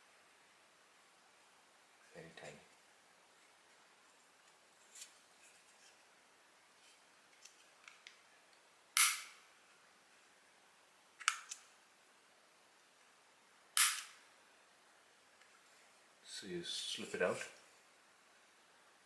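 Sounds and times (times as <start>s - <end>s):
plastic packaging clicks and snaps: 13.8s - 14.2s.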